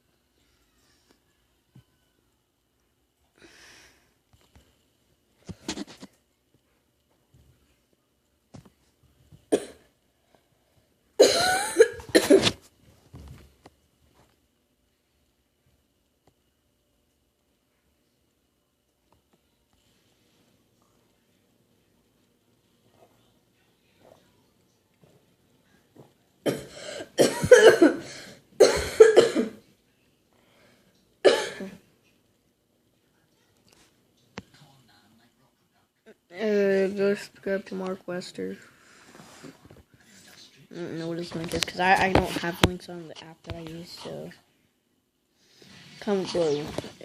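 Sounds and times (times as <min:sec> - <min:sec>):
person coughing: 0:09.5 - 0:09.8, 0:11.2 - 0:12.6, 0:26.5 - 0:29.6, 0:31.2 - 0:31.8.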